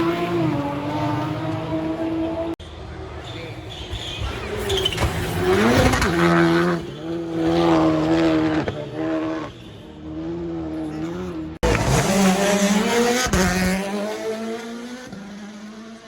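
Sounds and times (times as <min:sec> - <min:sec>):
rally car engine revving: 0:04.8 - 0:16.0.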